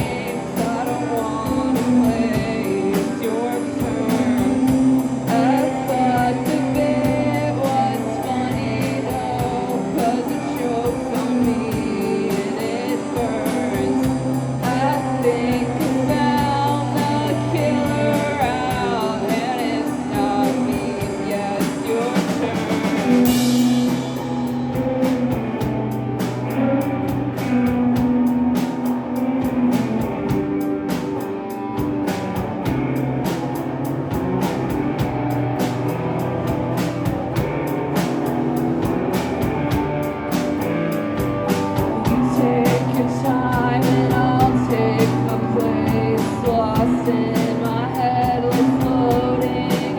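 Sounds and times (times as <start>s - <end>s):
person singing: 0.0s - 25.7s, 40.6s - 49.9s
rock band playing: 0.0s - 49.9s.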